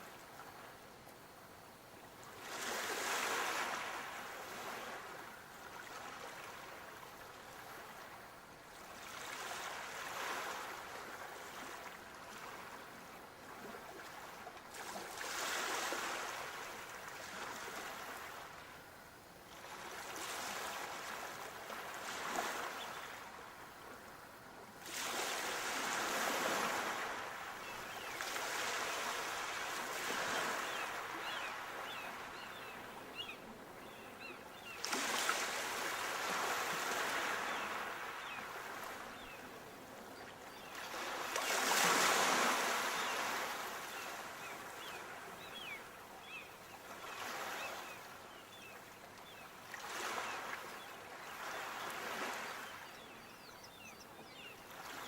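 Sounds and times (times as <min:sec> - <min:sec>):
sea waves breaking: 0:24.8 - 0:39.3, 0:40.6 - 0:46.4.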